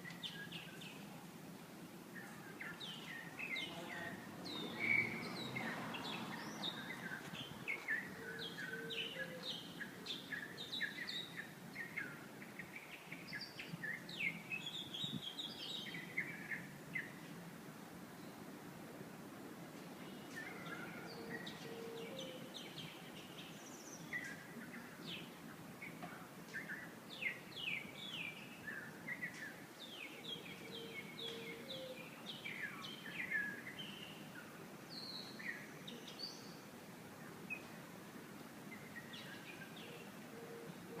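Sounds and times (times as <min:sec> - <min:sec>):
birds chirping and singing: 0:02.2 - 0:17.2, 0:20.0 - 0:36.7, 0:38.7 - 0:41.0.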